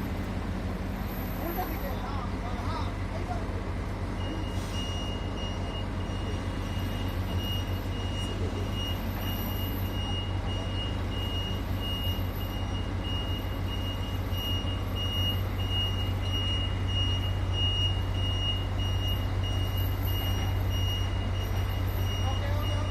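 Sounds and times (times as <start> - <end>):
diesel machine rumbling: 0.0 - 22.9
reversing alarm beeping: 4.2 - 22.9.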